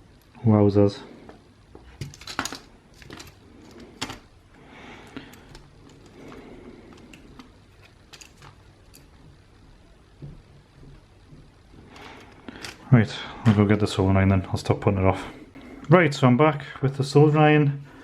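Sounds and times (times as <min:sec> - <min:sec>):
plastic parts clicking: 0:02.0 - 0:04.3, 0:05.1 - 0:09.1, 0:12.0 - 0:12.9.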